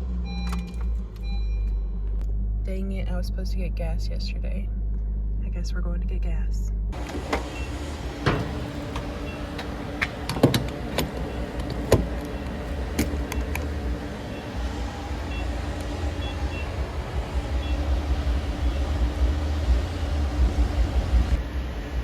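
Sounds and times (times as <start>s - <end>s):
engine and road rumble: 0.0s - 22.0s
sharp clicks and knocks: 7.0s - 14.8s.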